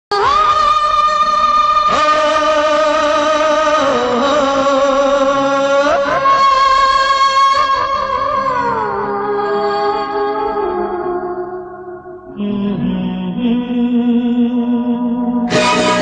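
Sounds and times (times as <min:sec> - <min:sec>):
music with sliding held notes: 0:15.5 - 0:16.0.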